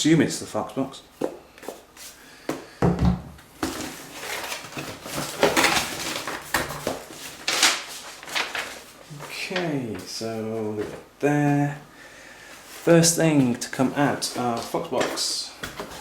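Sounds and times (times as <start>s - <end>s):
packaging rustling: 3.6s - 11.0s, 12.6s - 16.0s.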